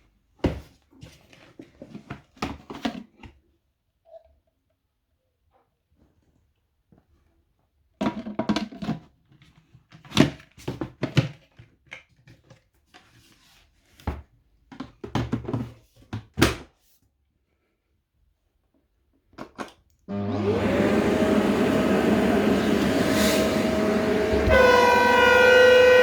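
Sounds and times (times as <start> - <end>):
vacuum cleaner motor whine: 20.1 - 26.0.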